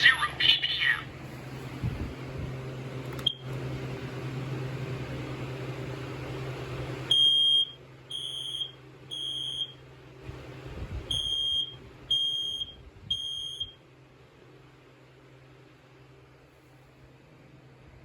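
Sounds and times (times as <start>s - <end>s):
smoke alarm beeping: 7.1s - 9.8s, 11.1s - 13.8s.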